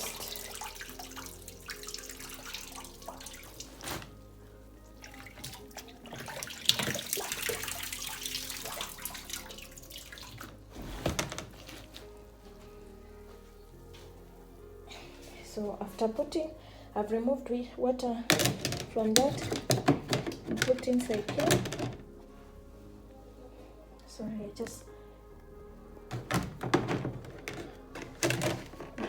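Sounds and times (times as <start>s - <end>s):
water sloshing and splashing: 0.0s - 12.2s, 18.3s - 22.0s, 26.1s - 29.0s.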